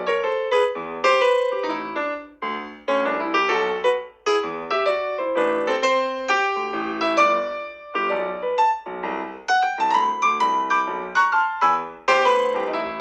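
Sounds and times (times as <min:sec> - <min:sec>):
piano-like ringtone tune: 0:00.0 - 0:01.9, 0:02.9 - 0:07.6.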